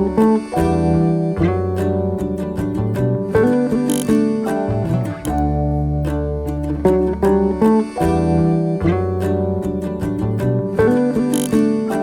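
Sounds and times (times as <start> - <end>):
plucked acoustic guitar: 0.0 - 12.0
bass line: 3.9 - 7.1.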